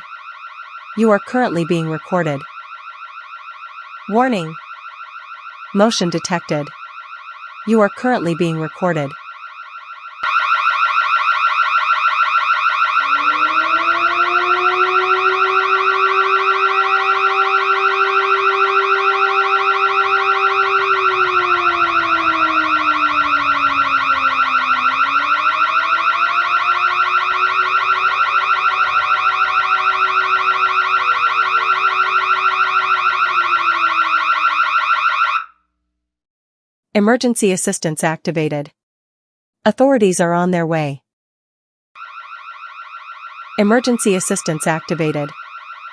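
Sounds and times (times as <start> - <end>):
burglar alarm pulsing tone: 0.0 - 35.5, 42.0 - 45.9
lower alarm tone sagging and climbing: 0.0 - 35.5, 42.0 - 45.9.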